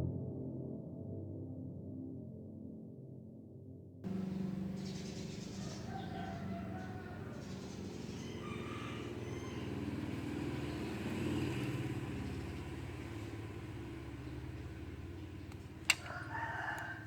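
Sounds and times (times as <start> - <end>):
vehicle engine rumbling: 4.1 - 17.0
sharp click: 15.5 - 16.1.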